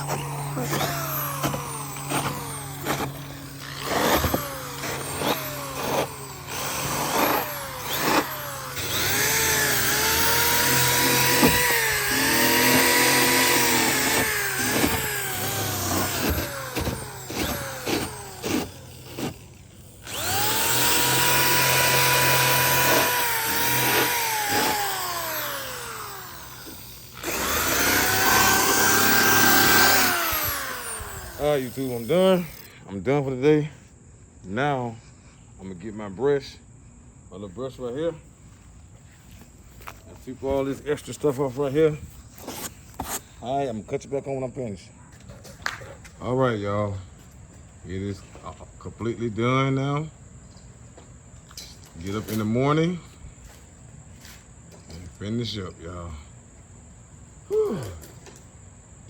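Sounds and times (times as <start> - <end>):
electric power tool motor whining: 0.0 - 32.8.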